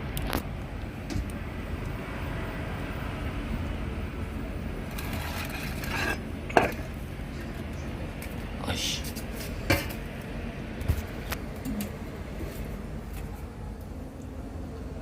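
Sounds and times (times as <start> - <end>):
steady low rumble: 0.0 - 15.0
scraping rustle: 4.9 - 6.9.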